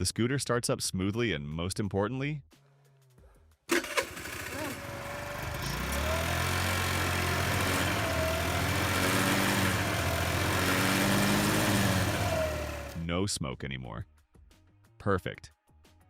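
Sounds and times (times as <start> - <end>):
scooter engine starting and idling: 3.7 - 13.0.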